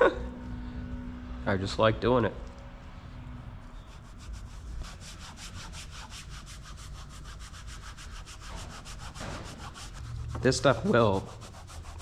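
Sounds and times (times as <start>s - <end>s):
applicator scrubbing back and forth: 3.6s - 12.0s.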